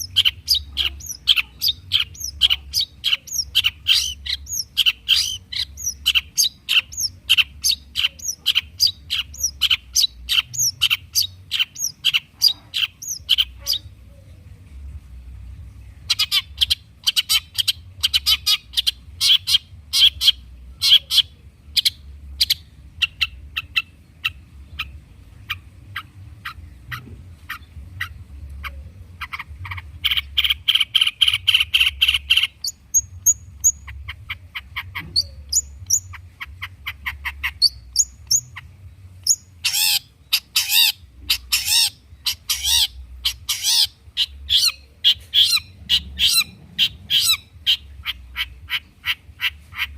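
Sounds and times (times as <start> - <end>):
shrike singing sharp chips: 0.0 - 13.9, 16.1 - 49.9
harsh bird chattering: 0.0 - 14.0, 16.0 - 49.9.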